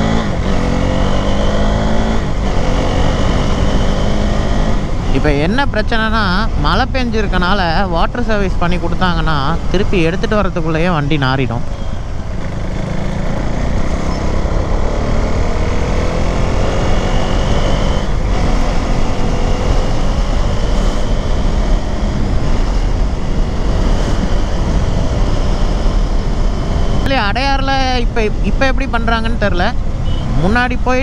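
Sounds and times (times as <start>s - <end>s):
road noise: 0.0s - 31.0s
motorcycle engine running: 8.9s - 31.0s
wind buffeting: 11.6s - 28.7s.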